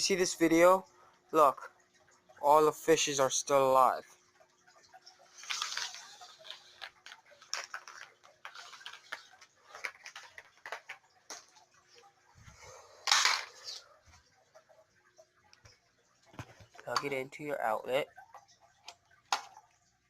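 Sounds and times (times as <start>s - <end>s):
faint steady hum: 0.0s - 20.0s
cord rustling: 5.2s - 14.3s.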